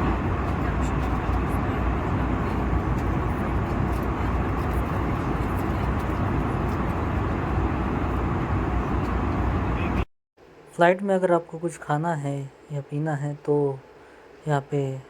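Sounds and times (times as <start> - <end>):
airliner cabin jet engine rush: 0.0 - 10.1.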